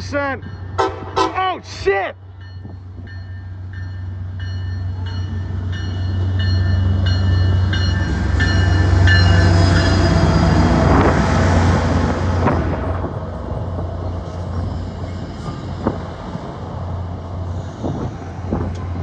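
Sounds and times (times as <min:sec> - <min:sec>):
diesel locomotive engine: 0:00.0 - 0:19.0
train wheel noise: 0:00.0 - 0:19.0
locomotive bell ringing: 0:02.3 - 0:10.6.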